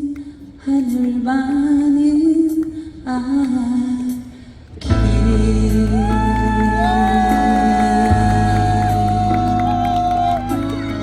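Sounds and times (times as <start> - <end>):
backing music: 4.8 - 11.0.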